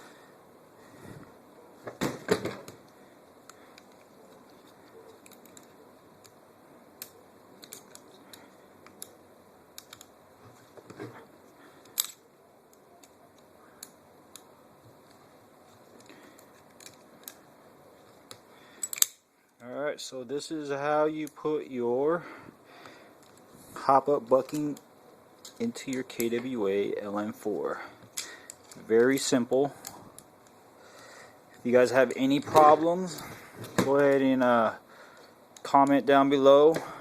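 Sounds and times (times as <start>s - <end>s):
metal parts and tools clicking: 7.0s - 9.2s, 11.8s - 14.4s, 16.0s - 17.4s, 18.0s - 19.6s.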